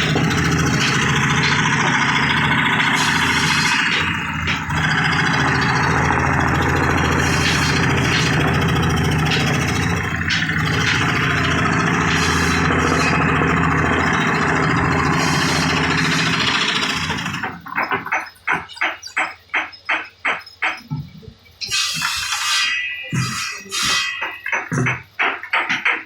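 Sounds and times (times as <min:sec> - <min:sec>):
power tool cutting wood: 0:00.0 - 0:17.6.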